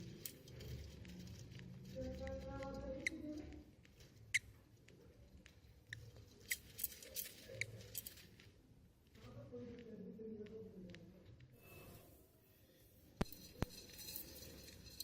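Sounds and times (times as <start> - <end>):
chicks clicking and scratching: 0.0 - 8.6, 13.2 - 15.0.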